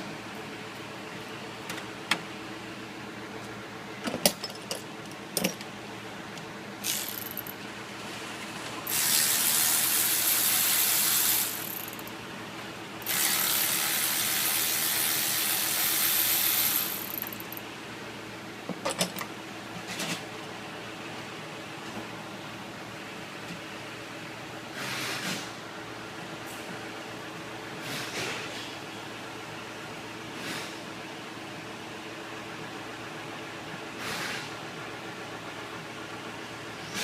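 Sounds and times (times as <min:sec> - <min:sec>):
loud hissing spray: 0:08.9 - 0:11.6, 0:13.1 - 0:17.0.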